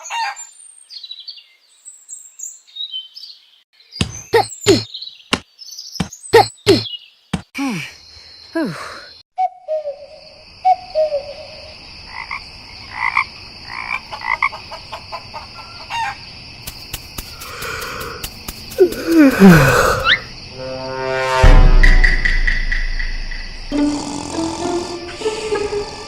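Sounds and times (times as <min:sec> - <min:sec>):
croaking calls: 0:12.1 - 0:16.2, 0:17.2 - 0:21.1, 0:22.2 - 0:26.0
short falling notes: 0:20.5 - 0:25.8
steady high trill: 0:20.5 - 0:26.0.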